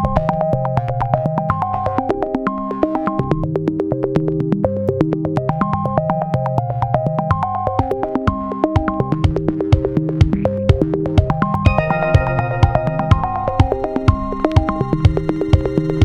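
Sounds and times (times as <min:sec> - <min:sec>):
bass line: 0:11.7 - 0:16.0
synthesizer music: 0:11.7 - 0:16.0.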